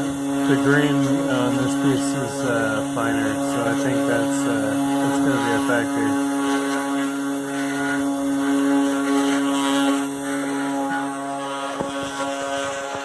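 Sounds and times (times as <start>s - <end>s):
cnc router milling wood: 0.0s - 13.0s.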